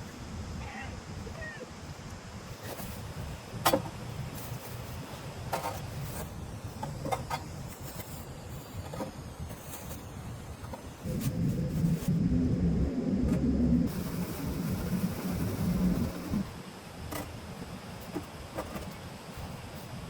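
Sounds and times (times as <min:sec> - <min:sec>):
steady low rumble: 0:10.4 - 0:16.6.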